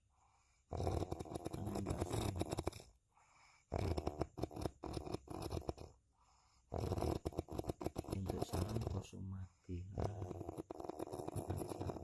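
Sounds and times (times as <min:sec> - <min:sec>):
coarse rattling snoring: 0:00.7 - 0:03.0, 0:03.7 - 0:06.0, 0:06.7 - 0:09.2, 0:09.8 - 0:12.0.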